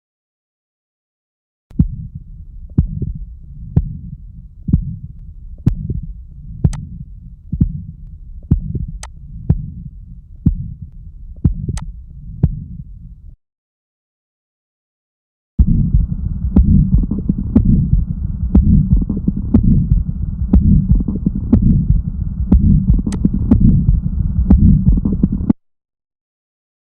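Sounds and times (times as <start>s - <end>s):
heartbeat: 1.7s - 13.2s, 15.6s - 25.6s
low whooshing heart murmur: 1.7s - 13.4s, 15.6s - 25.6s.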